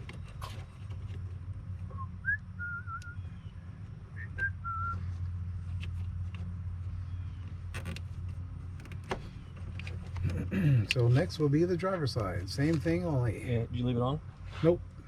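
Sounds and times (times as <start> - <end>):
steady low hum: 0.0 - 15.0
person whistling: 1.9 - 3.2, 4.2 - 5.1.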